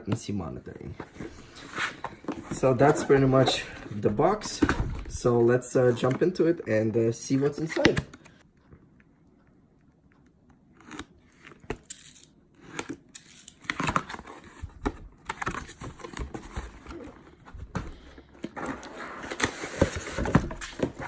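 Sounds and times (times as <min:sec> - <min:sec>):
cardboard box being unpacked: 0:11.8 - 0:21.0.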